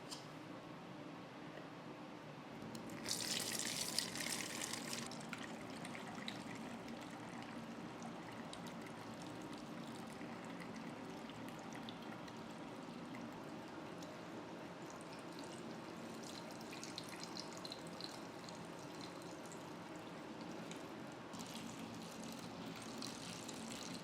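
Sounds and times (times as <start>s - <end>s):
liquid pouring into a container: 2.8s - 14.0s, 21.3s - 24.0s.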